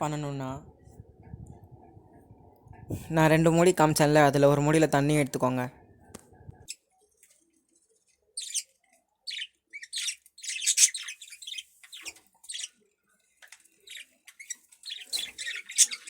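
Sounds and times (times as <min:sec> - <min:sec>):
budgerigar squawking and chirping: 0:08.4 - 0:08.7, 0:09.3 - 0:12.7, 0:13.9 - 0:16.0.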